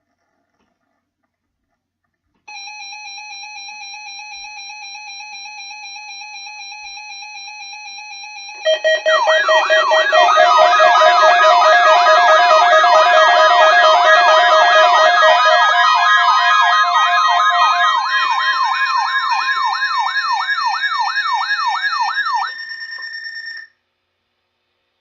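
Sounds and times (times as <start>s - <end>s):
wavering synth tone: 8.7s - 20.2s.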